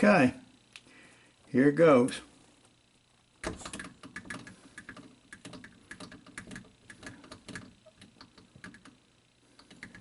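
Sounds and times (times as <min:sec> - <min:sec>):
sharp clicks and taps: 0:03.4 - 0:09.0.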